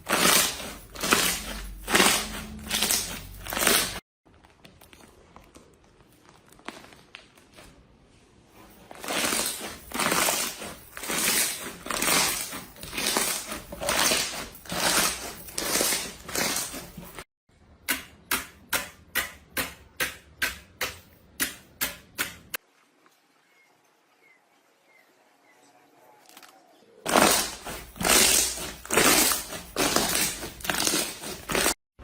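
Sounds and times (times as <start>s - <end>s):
slime squishing and crackling: 0.0s - 7.8s, 8.8s - 17.2s, 27.0s - 31.8s.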